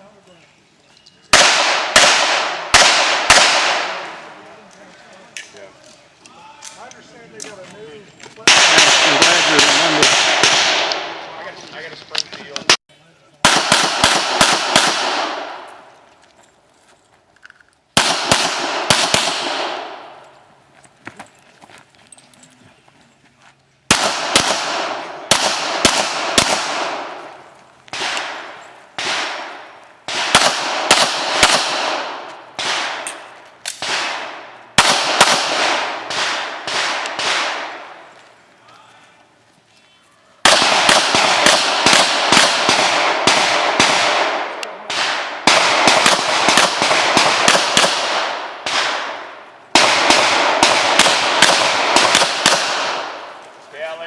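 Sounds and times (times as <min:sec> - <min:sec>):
pistol shots with echo: 0:01.3 - 0:04.4, 0:08.4 - 0:11.2, 0:13.4 - 0:15.9, 0:18.0 - 0:20.2, 0:23.9 - 0:38.0, 0:40.4 - 0:53.4.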